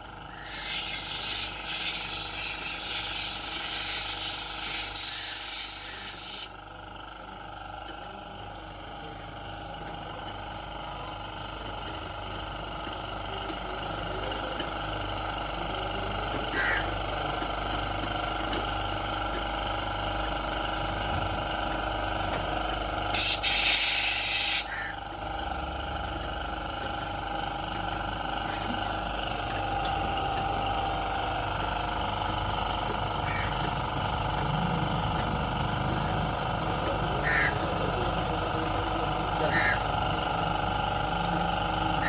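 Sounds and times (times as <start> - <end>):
mechanical hum: 0.0 - 42.0
loud hiss of spray: 0.5 - 6.5, 23.2 - 24.7.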